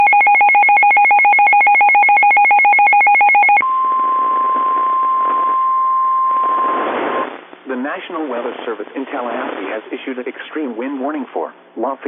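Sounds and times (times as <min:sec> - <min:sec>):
radio static: 0:03.8 - 0:05.6, 0:06.3 - 0:10.8.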